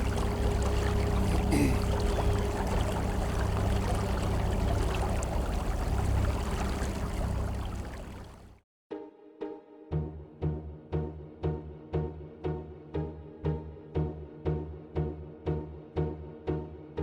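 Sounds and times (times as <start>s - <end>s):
low rumble: 0.0s - 8.5s
water rushing and trickling: 0.0s - 8.6s.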